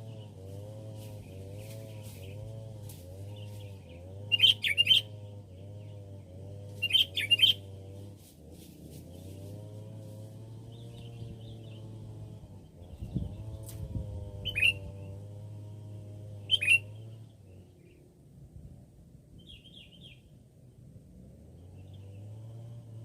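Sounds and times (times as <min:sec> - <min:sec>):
birds twittering: 0:00.0 - 0:08.1, 0:08.9 - 0:18.1, 0:19.4 - 0:20.4
steady low hum: 0:00.0 - 0:23.0.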